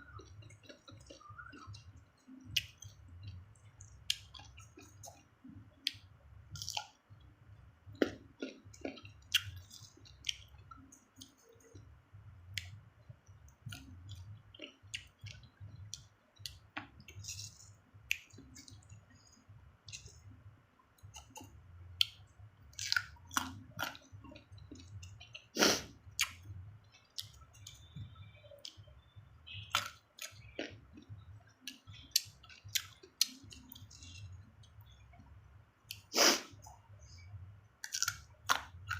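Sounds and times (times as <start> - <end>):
crunchy chewing: 0.0 - 5.2, 5.8 - 7.0, 13.7 - 19.2, 21.1 - 28.8, 37.8 - 38.9.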